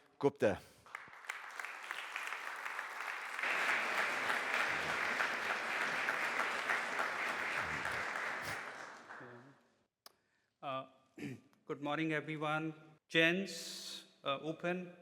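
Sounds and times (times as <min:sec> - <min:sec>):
audience applauding: 0:00.8 - 0:09.6.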